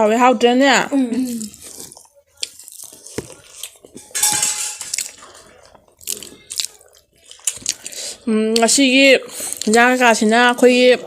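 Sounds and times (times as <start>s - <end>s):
dishes and cutlery clinking: 3.1s - 6.0s.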